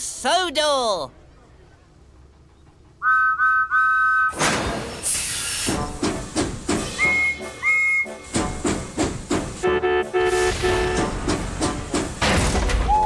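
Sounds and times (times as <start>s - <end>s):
locomotive chuffing: 2.0s - 12.3s
steam whistle toots: 3.0s - 4.4s, 6.8s - 8.4s, 9.6s - 11.3s
steam hissing: 4.4s - 9.6s.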